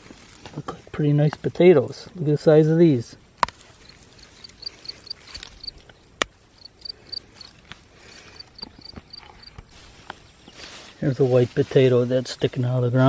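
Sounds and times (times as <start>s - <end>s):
cricket chirping: 1.2s - 11.2s.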